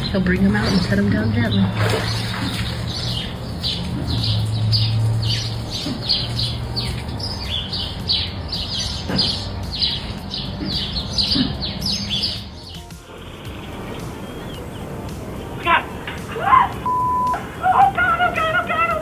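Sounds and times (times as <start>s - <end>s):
bird chirping: 0.0s - 19.0s.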